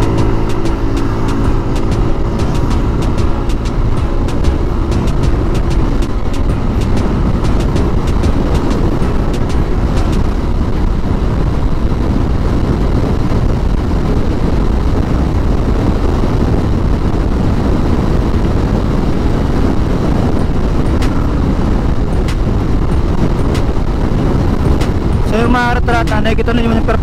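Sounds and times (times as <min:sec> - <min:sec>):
scooter engine running: 0:00.0 - 0:14.8
wind rush on microphone: 0:00.0 - 0:27.0
sharp clicks: 0:00.1 - 0:10.2.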